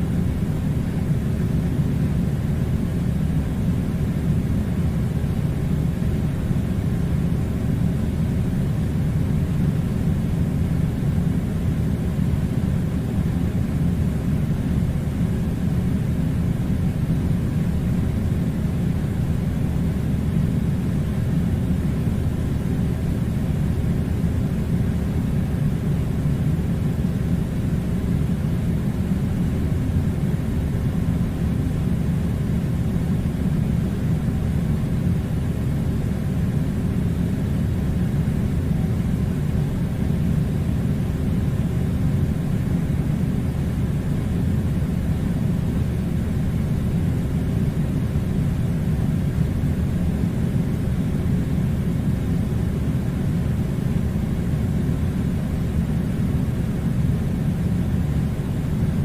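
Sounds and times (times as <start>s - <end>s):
air conditioner rumbling: 0.0s - 59.0s.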